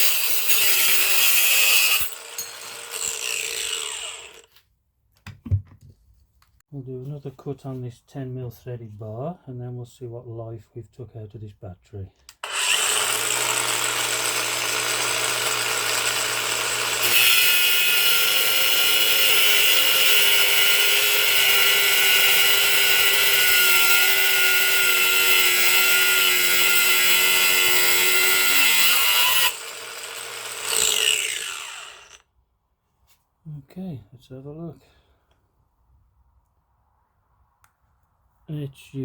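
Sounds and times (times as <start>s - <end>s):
angle grinder running: 0.0s - 4.5s, 12.4s - 32.2s
grinder cutting steel bar: 0.0s - 4.5s, 12.4s - 32.2s.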